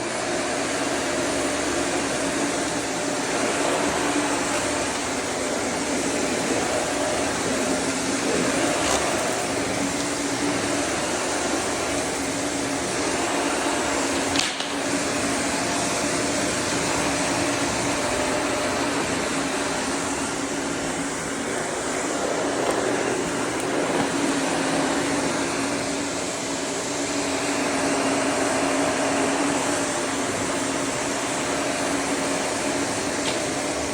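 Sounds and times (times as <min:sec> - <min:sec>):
vacuum cleaner running: 0:00.0 - 0:33.9.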